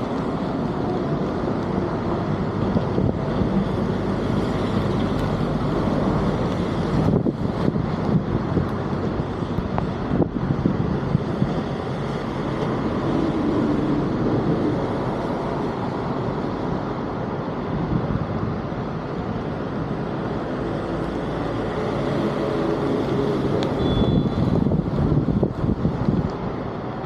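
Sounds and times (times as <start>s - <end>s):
brief high tone: 23.8s - 24.3s.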